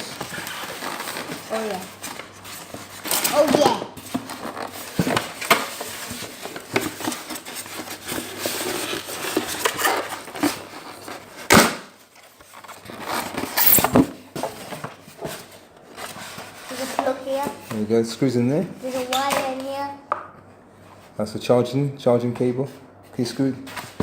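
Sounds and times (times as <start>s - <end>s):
packaging rustling: 0.0s - 17.6s.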